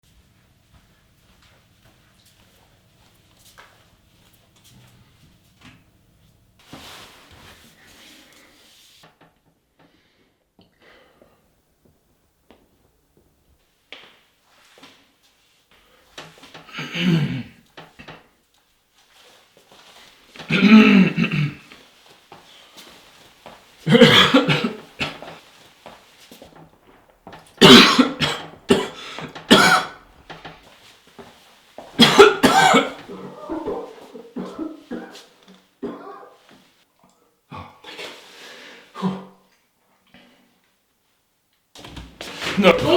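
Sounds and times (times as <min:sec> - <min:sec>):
person coughing: 0:16.7 - 0:18.2, 0:20.4 - 0:21.7, 0:23.8 - 0:25.4, 0:27.6 - 0:30.0, 0:32.0 - 0:36.3, 0:42.4 - 0:42.9.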